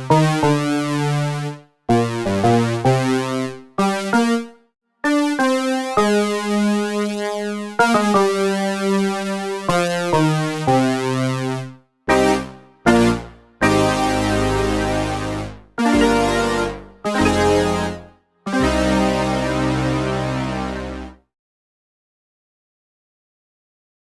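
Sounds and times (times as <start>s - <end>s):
synthesizer playing bright notes: 5.1s - 21.2s.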